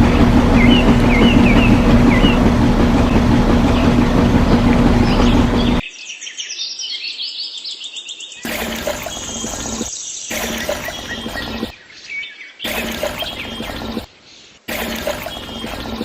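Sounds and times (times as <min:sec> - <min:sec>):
machine hum: 0:00.0 - 0:05.8, 0:08.5 - 0:11.7, 0:12.6 - 0:14.1, 0:14.7 - 0:16.0
birds chirping: 0:00.0 - 0:07.6, 0:08.2 - 0:16.0.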